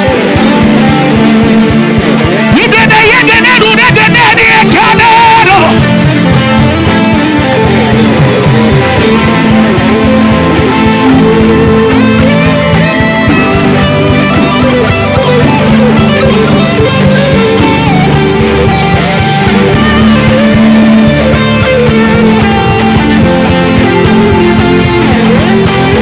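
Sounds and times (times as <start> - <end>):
bass line: 0.0 - 26.0
guitar: 0.0 - 26.0
instrumental worship band music: 0.0 - 26.0.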